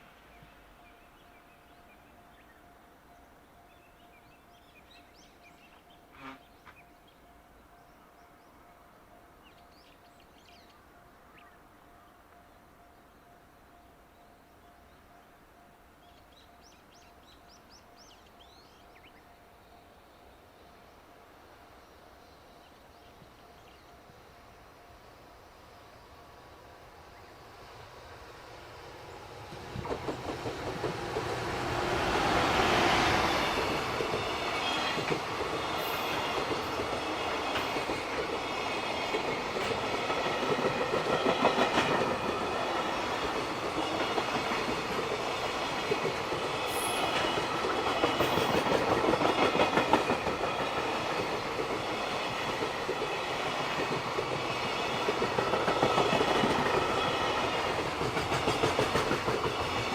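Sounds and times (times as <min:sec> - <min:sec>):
locomotive passing: 0:24.6 - 0:59.9
train wheels clattering over rail joints: 0:29.5 - 0:32.2, 0:33.5 - 0:59.9.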